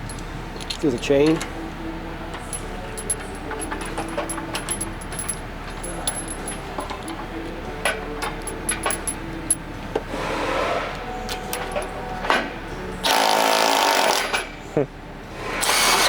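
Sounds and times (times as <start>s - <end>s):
chain jangling against metal: 0.0s - 1.6s, 2.4s - 9.8s, 10.9s - 12.1s.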